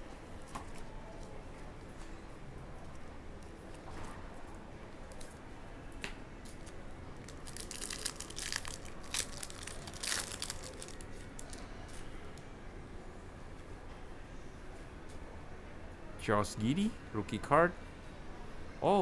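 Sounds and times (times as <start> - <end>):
wrapper tearing and crinkling: 7.2 - 11.6.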